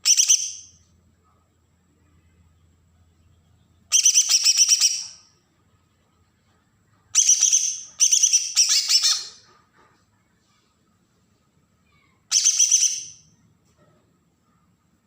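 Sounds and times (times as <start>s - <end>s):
bird harsh rapid chattering: 12.3s - 13.1s.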